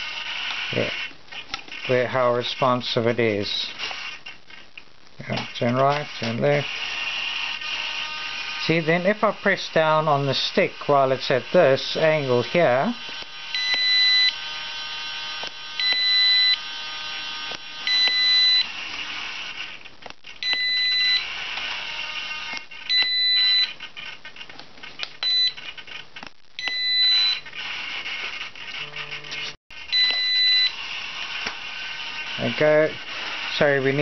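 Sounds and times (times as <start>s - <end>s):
transmitter beeping: 15.8s - 16.6s, 17.8s - 18.7s, 20.4s - 21.3s, 22.9s - 23.8s, 26.6s - 27.4s, 28.8s - 30.8s.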